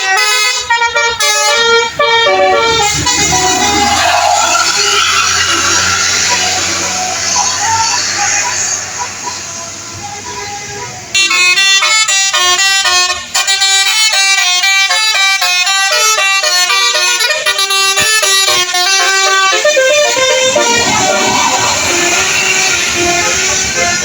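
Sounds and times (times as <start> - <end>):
melodic air horn tune: 0.0 - 24.0.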